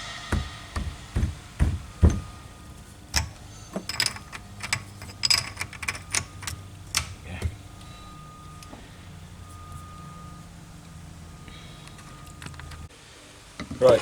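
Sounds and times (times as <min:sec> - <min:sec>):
metal clicks and knocks from tools: 0:03.1 - 0:07.9.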